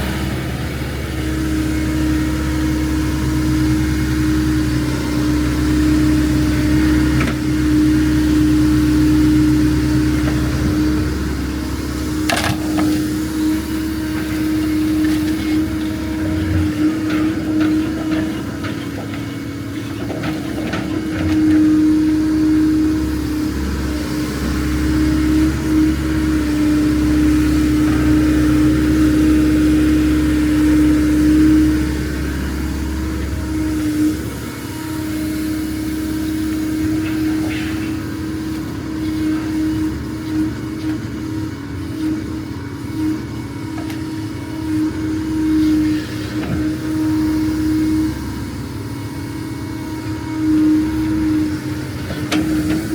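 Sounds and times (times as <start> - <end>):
diesel engine running under load: 0.0 - 52.9.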